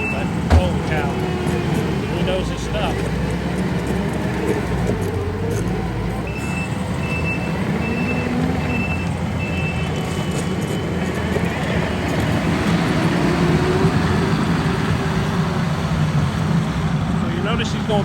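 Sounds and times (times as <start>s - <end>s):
diesel engine under load: 0.0s - 18.0s
backup alarm beeping: 6.3s - 9.9s.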